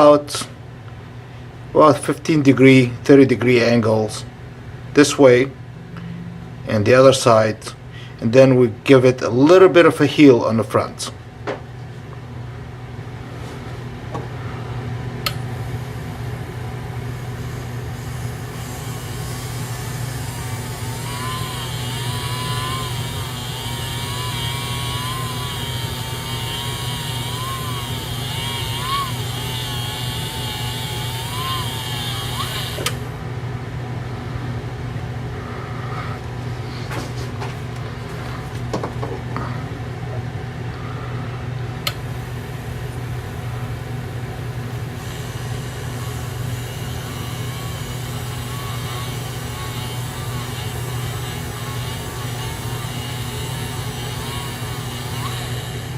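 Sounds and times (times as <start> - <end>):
sharpening wheel motor hum: 15.2 - 33.2, 41.8 - 55.9
graver whine and hiss on wheel: 17.1 - 33.1, 44.6 - 55.9.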